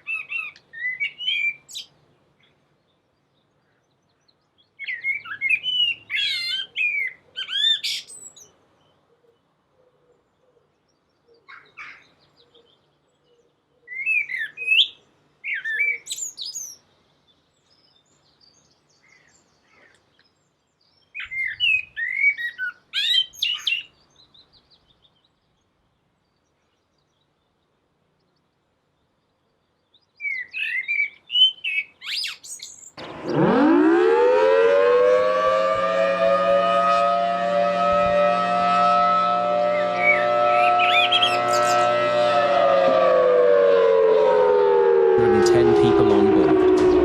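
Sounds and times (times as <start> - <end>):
birds chirping: 0.0 - 43.3
civil defense siren wailing: 33.0 - 47.0.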